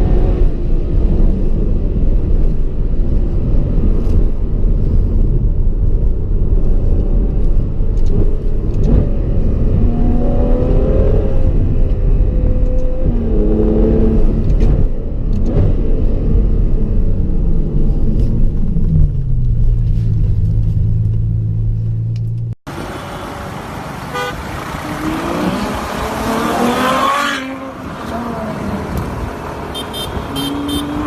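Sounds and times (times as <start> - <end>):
car engine revving: 20.5 - 31.0.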